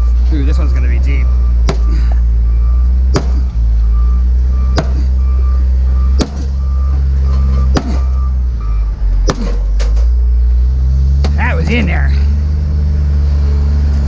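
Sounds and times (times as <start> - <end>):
reversing alarm beeping: 0.0 - 9.3
heavy vehicle engine running: 0.0 - 14.0.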